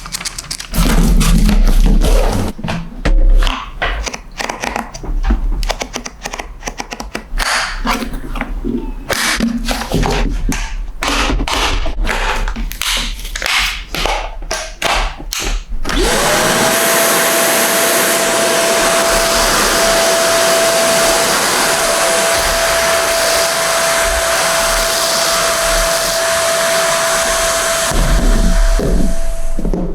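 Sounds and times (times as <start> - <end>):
vacuum cleaner motor whine: 15.8 - 29.9.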